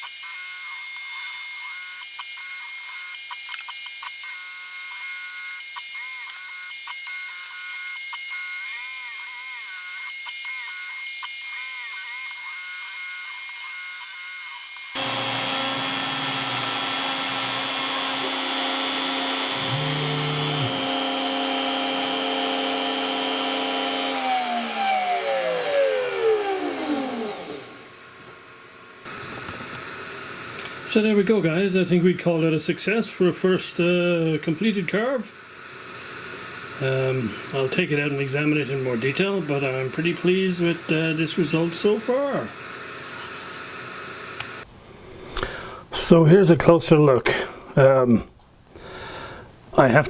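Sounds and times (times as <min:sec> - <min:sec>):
router spinning down: 0:00.0 - 0:28.0
router spindle whining: 0:00.0 - 0:28.2, 0:35.6 - 0:44.7.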